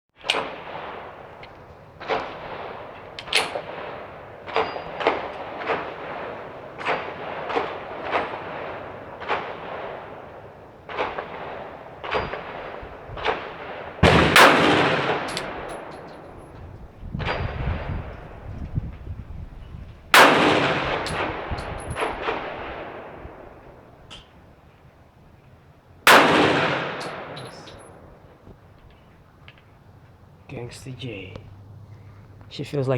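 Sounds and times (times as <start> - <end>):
pistol shots with echo: 0.2 - 16.5, 20.1 - 24.1, 26.1 - 28.3.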